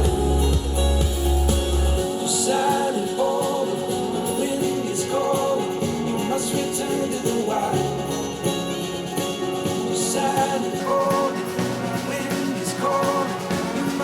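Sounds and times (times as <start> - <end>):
deep bass note: 0.0 - 2.0
music through speakers: 0.0 - 14.0.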